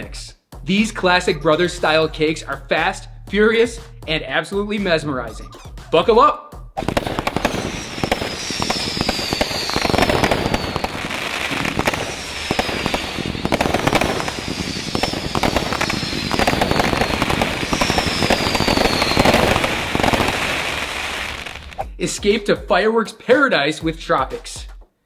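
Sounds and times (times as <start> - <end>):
falling firework whistle: 6.8 - 21.8
fireworks shooting rapid volleys: 6.8 - 22.4.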